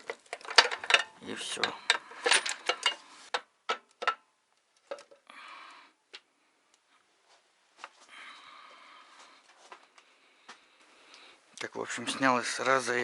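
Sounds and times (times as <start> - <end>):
engine parts clicking and knocking: 0.0 - 4.2.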